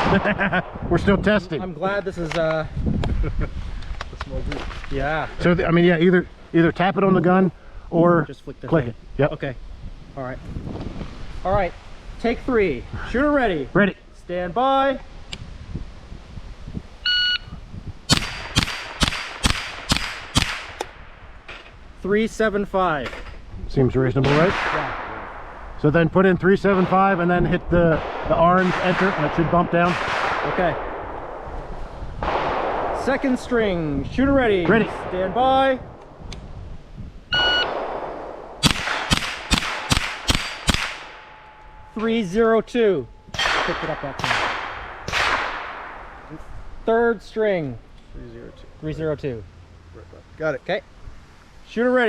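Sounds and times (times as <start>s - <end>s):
rifle shots: 0.0s - 0.7s, 18.1s - 21.1s, 24.2s - 25.6s, 26.6s - 31.5s, 32.2s - 33.4s, 37.4s - 41.9s, 43.3s - 46.3s
shot timer start beep: 17.1s - 17.5s, 37.3s - 37.7s
faint gunshot cracks: 18.1s - 21.0s, 37.7s - 41.4s, 43.4s - 46.2s
shot timer beep: 37.3s - 37.7s.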